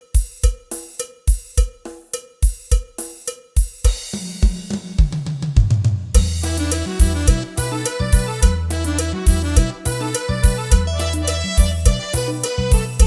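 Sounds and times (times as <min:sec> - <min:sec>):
drum kit playing: 0:00.0 - 0:13.0
bass run: 0:06.2 - 0:13.0
full band with keyboards: 0:06.4 - 0:13.0.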